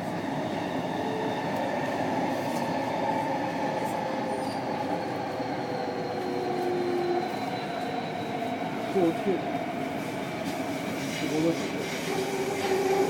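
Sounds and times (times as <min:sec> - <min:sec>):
train running noise: 0:00.0 - 0:13.0.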